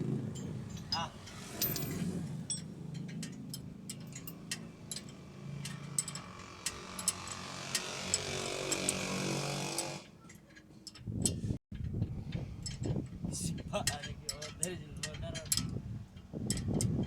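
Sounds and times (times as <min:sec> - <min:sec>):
metal tools clinking: 0:00.3 - 0:09.0, 0:09.8 - 0:11.9, 0:12.6 - 0:17.0
power tool running: 0:06.3 - 0:10.1.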